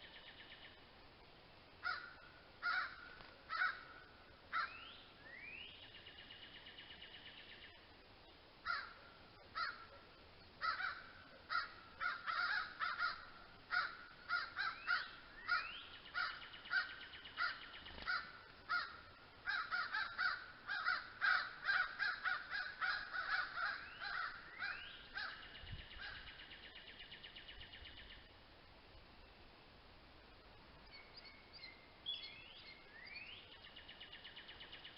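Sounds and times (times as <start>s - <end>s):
harsh caw-like bird calls: 1.8s - 5.0s, 8.6s - 10.0s, 10.6s - 26.4s.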